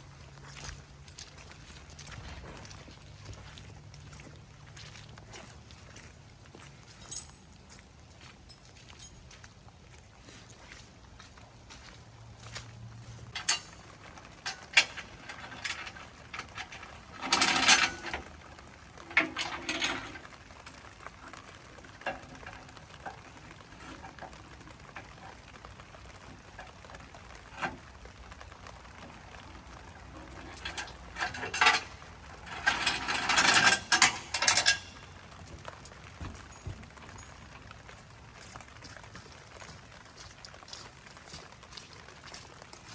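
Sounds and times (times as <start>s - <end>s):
metal clanking and clicking: 13.3s - 18.4s, 19.0s - 20.8s, 30.1s - 37.9s
metal rattling: 13.3s - 18.4s, 19.1s - 20.4s, 30.1s - 38.0s.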